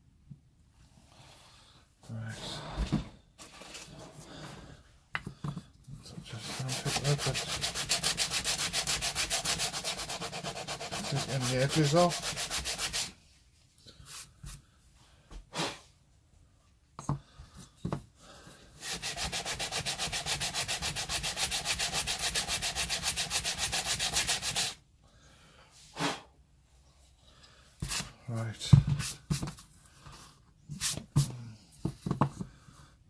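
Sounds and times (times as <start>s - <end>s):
sandpaper rubbing on plywood: 6.4s - 13.2s, 18.8s - 24.8s.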